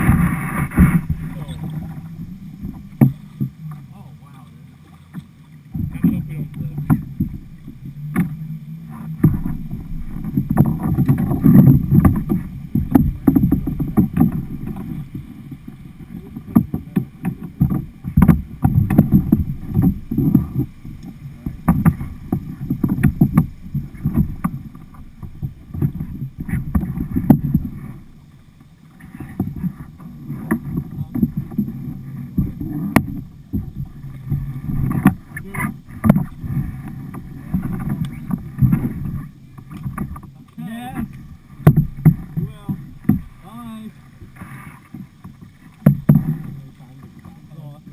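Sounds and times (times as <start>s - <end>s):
knocks on kayak: 0.0s - 3.6s, 5.1s - 7.4s, 9.2s - 15.3s, 16.4s - 20.7s, 21.4s - 27.8s, 41.0s - 43.4s, 45.8s - 46.6s
river water rushing and splashing: 0.0s - 47.9s.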